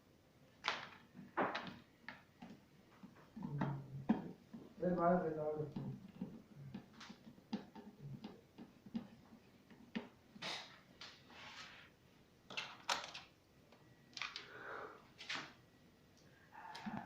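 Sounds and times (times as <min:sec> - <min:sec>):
objects clicking and knocking: 0:00.6 - 0:04.8, 0:12.5 - 0:13.4.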